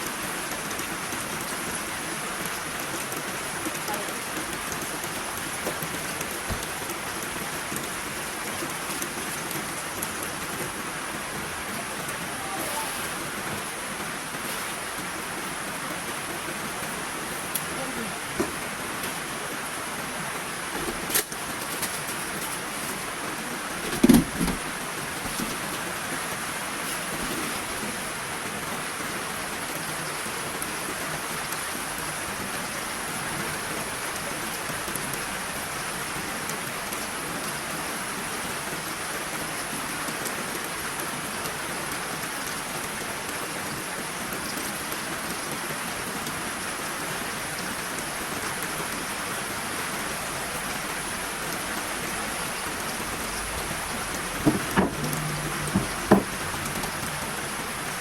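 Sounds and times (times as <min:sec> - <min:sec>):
heavy rain hissing: 0:00.0 - 0:58.0
sharp knock: 0:54.4 - 0:56.3.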